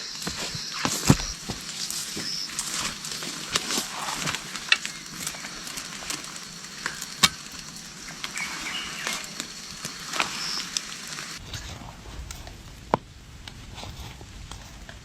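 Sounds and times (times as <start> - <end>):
footsteps through dry leaves: 0.0 - 11.4
twigs crackling and snapping: 0.0 - 11.4.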